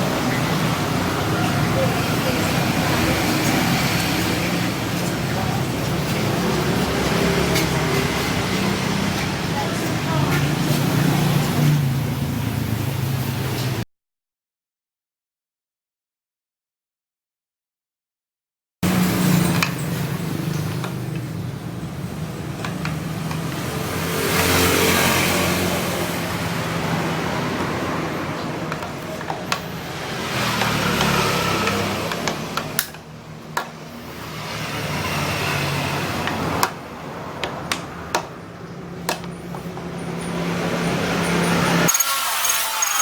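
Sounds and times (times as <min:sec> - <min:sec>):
scooter engine revving: 0:00.0 - 0:13.8, 0:23.6 - 0:28.5, 0:29.7 - 0:32.8.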